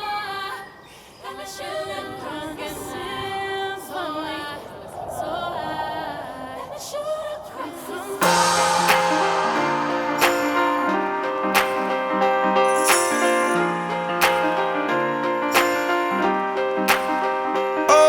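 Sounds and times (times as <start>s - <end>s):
background music with singing: 0.0s - 18.0s.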